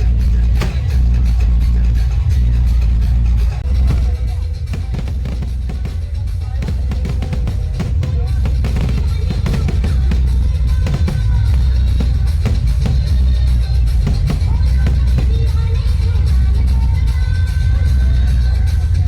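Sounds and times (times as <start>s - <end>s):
heavy bass drum beat: 0.0s - 19.0s
loud music: 0.0s - 19.0s.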